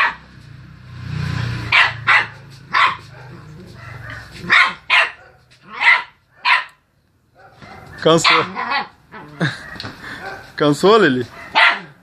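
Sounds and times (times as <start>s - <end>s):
small dog barking: 0.0s - 0.3s, 1.7s - 6.8s, 7.4s - 10.6s, 11.3s - 12.0s
dog growling: 8.3s - 9.8s.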